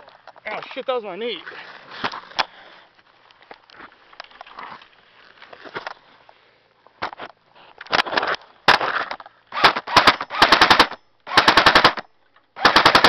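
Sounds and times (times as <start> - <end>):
airsoft gun firing bursts: 9.5 - 12.0, 12.6 - 13.0.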